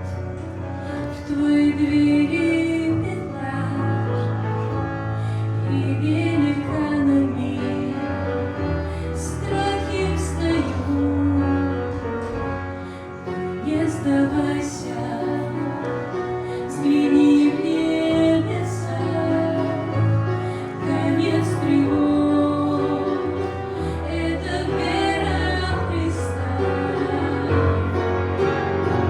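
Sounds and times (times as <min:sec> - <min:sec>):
instrumental accompaniment: 0:00.0 - 0:29.0
woman singing slow song: 0:13.6 - 0:20.0, 0:20.7 - 0:27.9.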